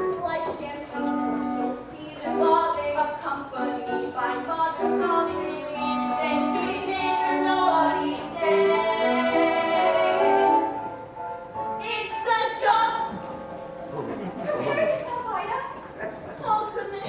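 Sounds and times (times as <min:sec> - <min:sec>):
girls singing with accompaniment: 0:00.0 - 0:11.1, 0:11.7 - 0:13.2.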